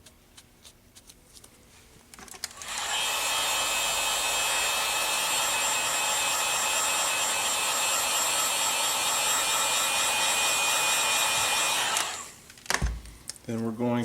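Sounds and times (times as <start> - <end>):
hot-air dryer blowing with whine: 2.6 - 12.4.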